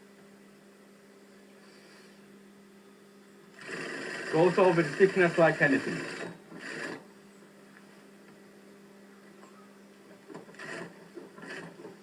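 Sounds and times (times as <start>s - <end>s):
sewing machine motor humming: 3.5s - 7.2s, 10.1s - 12.0s.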